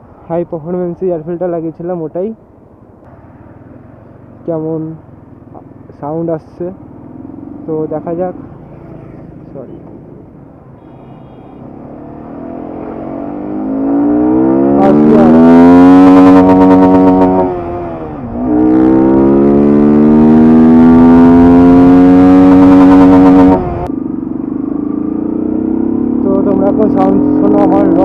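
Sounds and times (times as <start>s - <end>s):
motorcycle engine accelerating: 6.6s - 10.4s, 11.6s - 28.0s.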